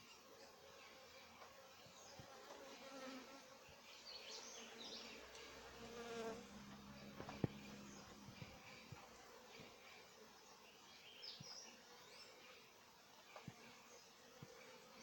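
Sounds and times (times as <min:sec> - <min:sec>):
bees buzzing: 0:00.8 - 0:10.2.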